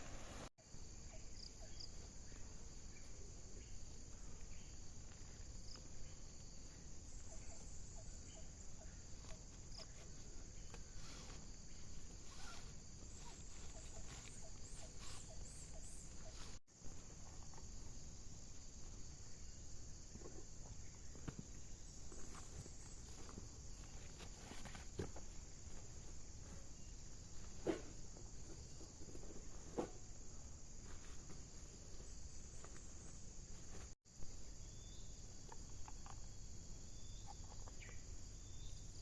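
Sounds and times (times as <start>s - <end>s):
crickets chirring: 0.1s - 39.0s
small ticks and chirps: 34.1s - 39.0s.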